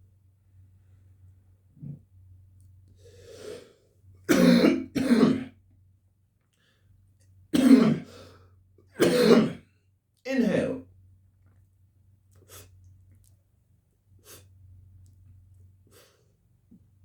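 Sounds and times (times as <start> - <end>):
man clearing throat: 4.3 - 5.5, 7.6 - 8.1, 9.0 - 9.6
man coughing: 4.3 - 5.5, 7.6 - 8.1, 9.0 - 9.6.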